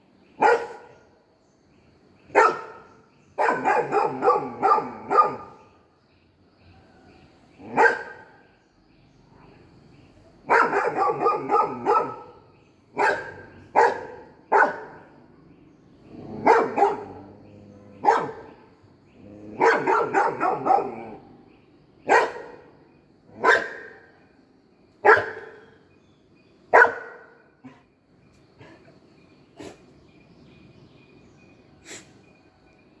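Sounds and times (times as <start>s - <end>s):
dog barking: 0.4s - 1.0s, 2.3s - 5.7s, 7.6s - 8.4s, 10.4s - 15.1s, 16.2s - 17.3s, 17.9s - 18.6s, 19.5s - 21.2s, 22.0s - 24.1s, 25.0s - 25.7s, 26.7s - 27.8s.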